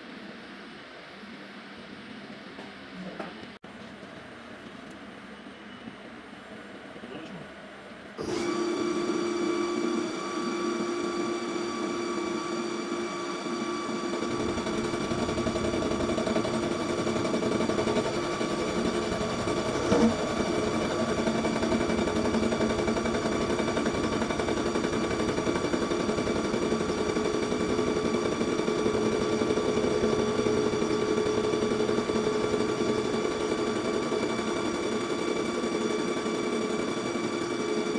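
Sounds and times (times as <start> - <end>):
milling machine whining: 8.2 - 37.9.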